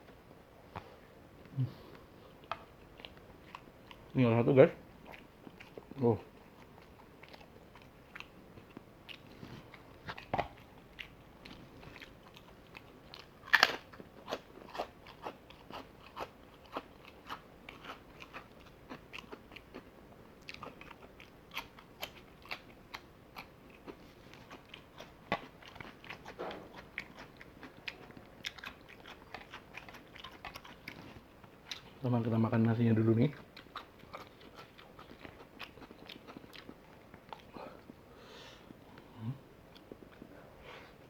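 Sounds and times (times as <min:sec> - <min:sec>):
person chewing crispy food: 0:05.0 - 0:32.0, 0:33.2 - 0:38.0.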